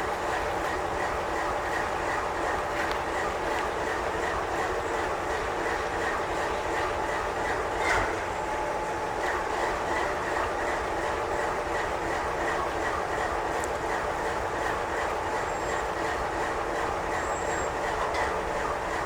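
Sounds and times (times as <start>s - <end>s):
freight train wheels on rails: 0.0s - 19.0s.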